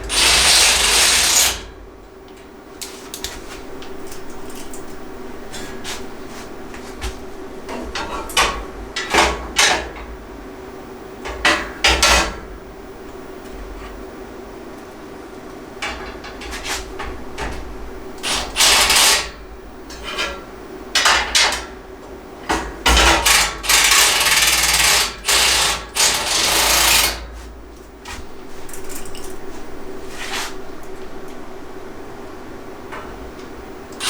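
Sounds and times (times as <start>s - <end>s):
metal parts scraping and clanking: 0.1s - 1.6s, 18.2s - 19.3s, 22.9s - 27.3s.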